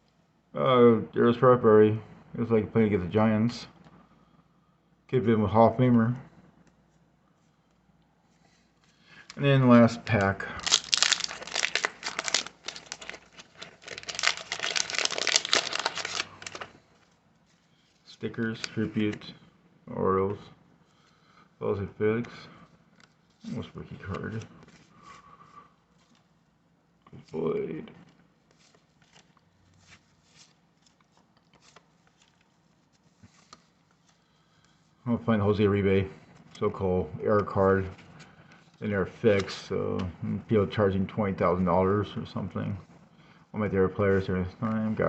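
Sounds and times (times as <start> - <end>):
trading cards clicking and rustling: 9.1 - 16.8, 37.4 - 40.1
wrapper and cards crinkling: 9.2 - 18.0, 28.3 - 34.3.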